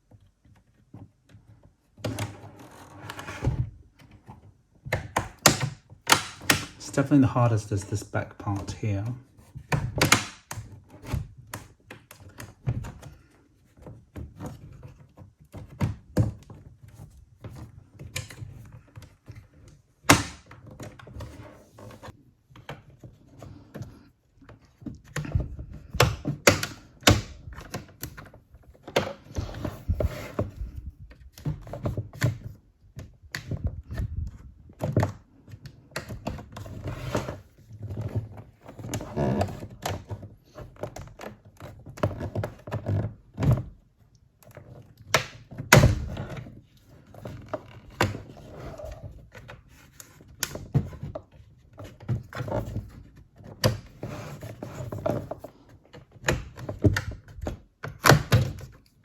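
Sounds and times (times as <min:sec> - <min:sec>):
plastic case clips snapping: 0:05.0 - 0:06.8, 0:10.0 - 0:10.5.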